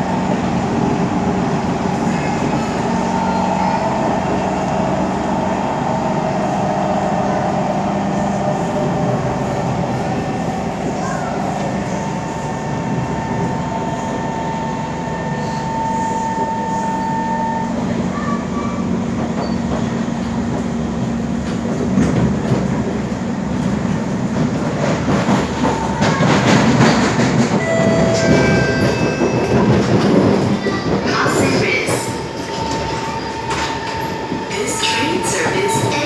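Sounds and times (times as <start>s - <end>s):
wheel-on-rail rumble and clicks: 17.8s - 36.0s.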